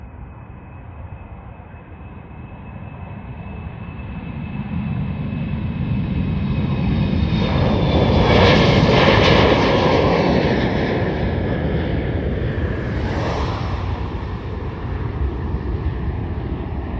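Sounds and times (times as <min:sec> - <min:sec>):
jet engines at takeoff: 0:00.0 - 0:16.9
high engine whine: 0:06.1 - 0:16.9.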